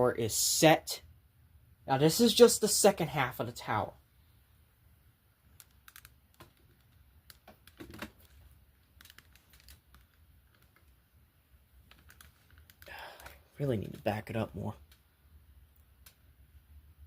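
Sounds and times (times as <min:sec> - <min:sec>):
plastic building bricks clicking: 0:05.5 - 0:11.0, 0:11.8 - 0:14.1.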